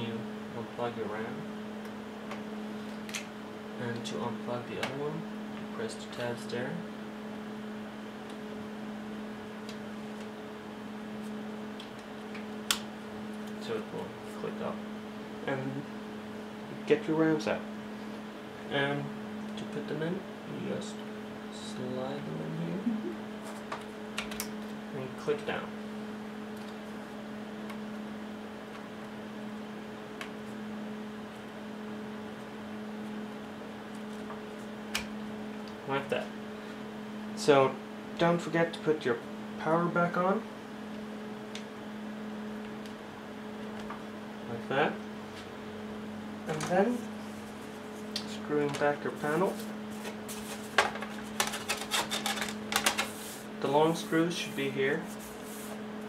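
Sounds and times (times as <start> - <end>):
steady background hum: 0.0 - 56.0.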